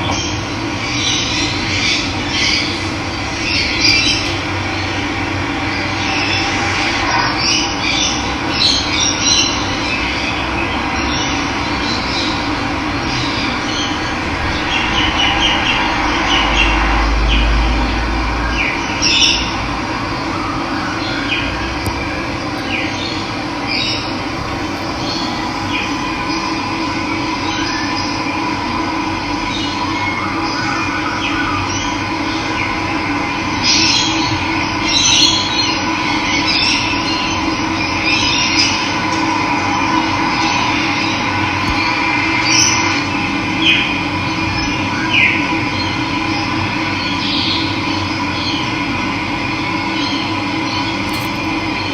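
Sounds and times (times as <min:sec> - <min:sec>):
birds chirping and calling: 0:22.6 - 0:26.8.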